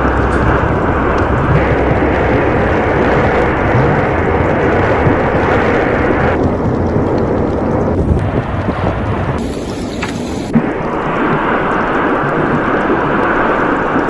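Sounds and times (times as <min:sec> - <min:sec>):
deep rumbling roar of eruption: 0:00.0 - 0:14.0.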